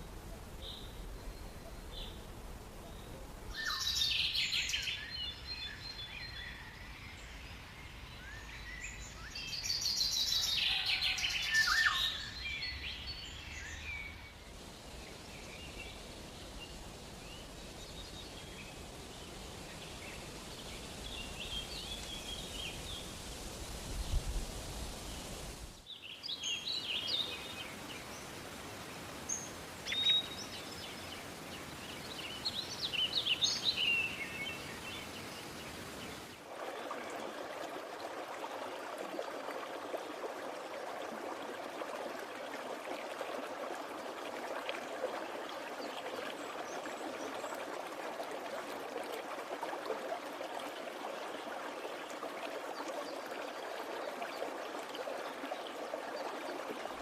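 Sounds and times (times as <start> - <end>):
steady background hiss: 0.0 - 37.6.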